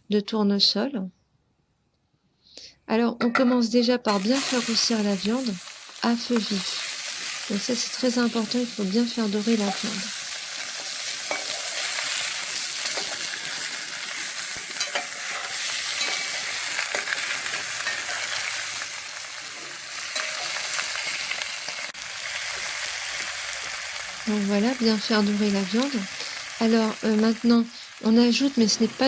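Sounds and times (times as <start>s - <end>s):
chicken sizzling in hot oil: 4.1s - 29.0s.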